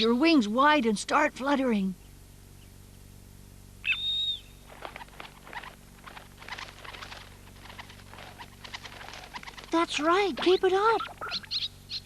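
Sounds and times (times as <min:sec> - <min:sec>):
wing-flutter taps: 0:04.7 - 0:11.3.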